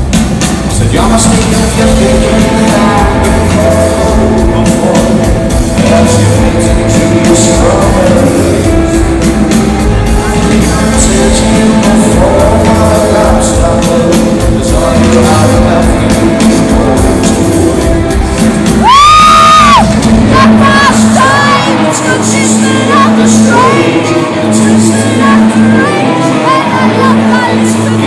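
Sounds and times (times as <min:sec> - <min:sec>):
drum strikes: 0:00.0 - 0:21.3
rock band playing live: 0:00.0 - 0:28.0
lead singer singing: 0:00.7 - 0:28.0.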